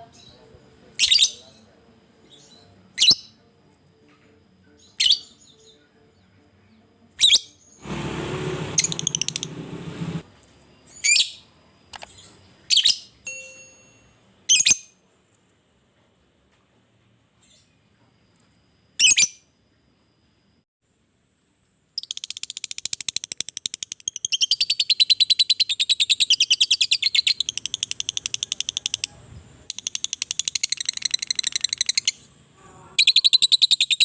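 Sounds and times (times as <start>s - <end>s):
harsh rapid bird chatter: 8.8s - 9.6s, 29.7s - 32.2s.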